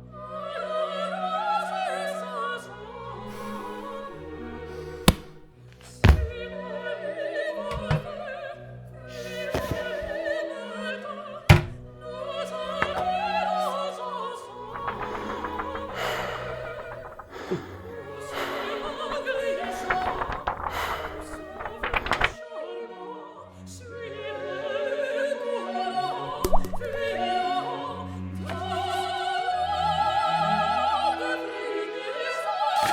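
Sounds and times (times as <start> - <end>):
operatic singing: 3.0 - 6.5, 7.4 - 8.5, 9.1 - 22.4, 23.8 - 31.5
sharp thuds: 3.2 - 6.5, 9.4 - 10.2, 12.7 - 13.4, 14.7 - 22.4.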